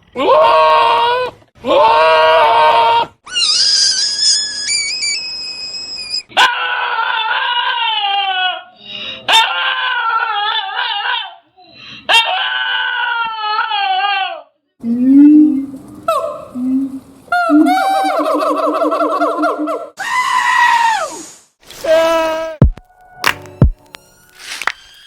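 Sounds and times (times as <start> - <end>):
comic animal cries: 0.2 - 8.6, 12.1 - 14.4
high whistling tone: 3.4 - 6.3
sharp click: 23.2 - 24.0.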